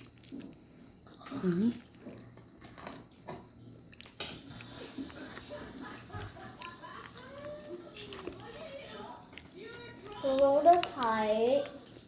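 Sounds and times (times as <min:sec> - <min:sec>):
cutlery and dishes clinking: 0:04.2 - 0:12.0.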